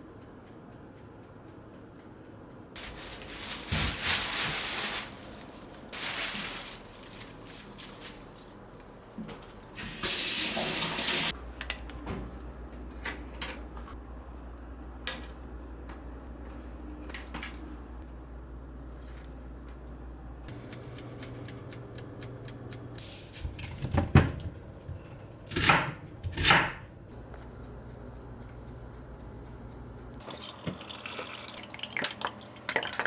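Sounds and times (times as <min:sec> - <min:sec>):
tap water running into sink: 0:30.2 - 0:33.0.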